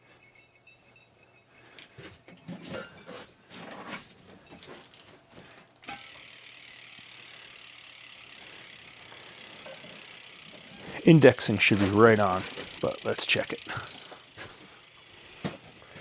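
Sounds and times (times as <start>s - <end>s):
freewheel hub ticking: 5.8s - 16.0s.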